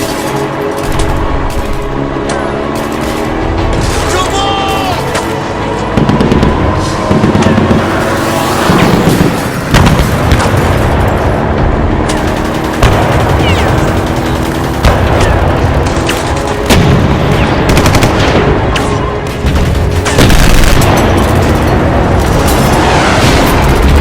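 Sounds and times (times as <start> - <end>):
music: 0.0 - 24.0
continuous low rumble: 5.2 - 24.0
booming explosions: 5.9 - 14.1, 14.7 - 24.0.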